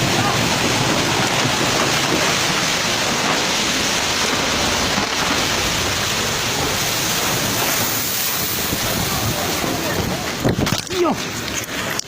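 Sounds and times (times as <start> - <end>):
rushing floodwater: 0.0 - 12.0.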